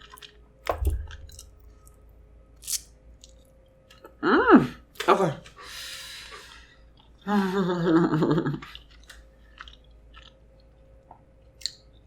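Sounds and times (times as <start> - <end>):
chewing with wet mouth clicks: 0.0 - 2.0, 8.6 - 12.0.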